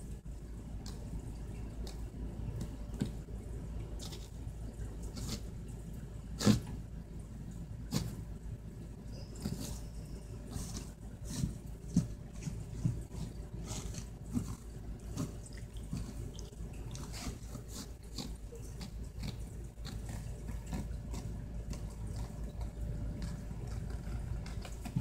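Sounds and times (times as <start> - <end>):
steady low hum: 0.0 - 25.0
kitten paws tapping and scuffing: 9.1 - 25.0.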